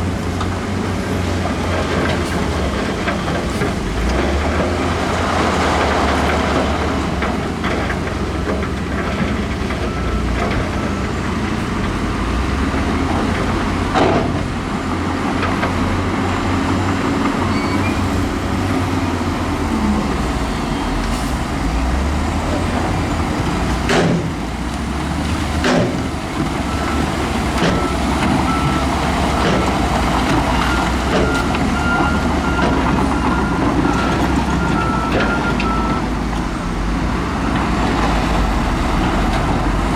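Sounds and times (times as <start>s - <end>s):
heavy diesel machinery running: 0.0s - 39.9s
reversing alarm beeping: 26.6s - 29.6s, 30.5s - 36.2s.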